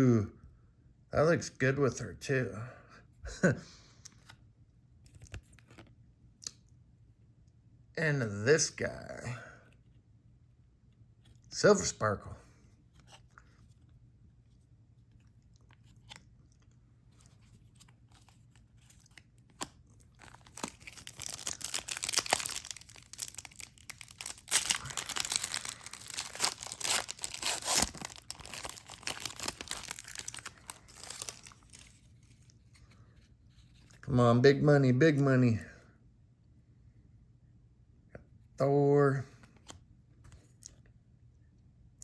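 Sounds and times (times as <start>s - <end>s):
foil wrapper crackling: 18.9s - 32.0s.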